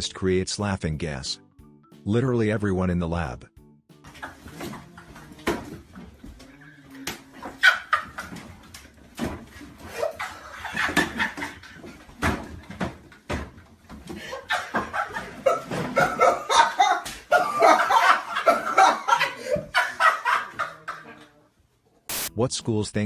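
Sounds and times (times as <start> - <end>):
group of people laughing: 7.0 - 8.8, 9.8 - 12.1, 14.2 - 21.4.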